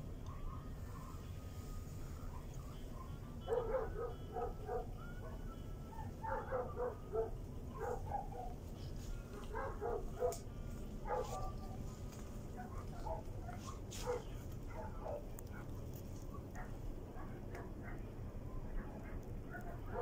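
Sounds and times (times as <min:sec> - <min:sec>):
low background rumble: 0:00.0 - 0:20.0
dog barking: 0:00.9 - 0:01.2, 0:02.2 - 0:08.6, 0:09.3 - 0:11.8, 0:12.5 - 0:18.1, 0:18.8 - 0:20.0.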